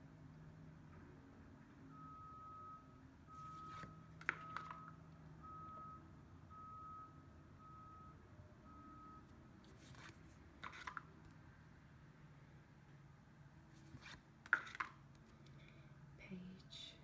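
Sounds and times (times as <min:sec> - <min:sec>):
faint electronic beeping: 0:01.9 - 0:09.4.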